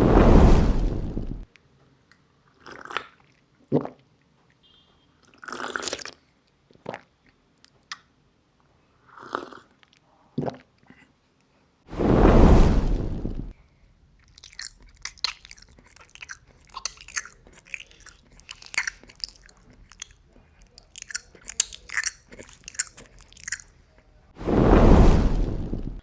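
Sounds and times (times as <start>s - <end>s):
deep rushing burst: 11.9s - 13.5s, 24.4s - 26.0s
crunchy chewing: 14.2s - 23.8s.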